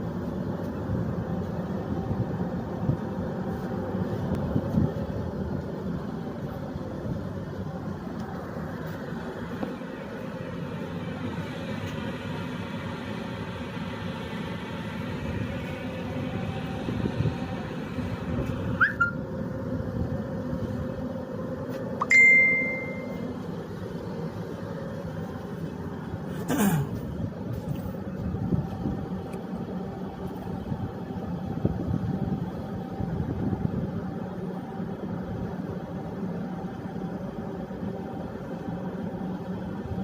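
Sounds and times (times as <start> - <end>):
ship machinery drone: 0.0 - 40.0
short high beep: 22.0 - 23.2.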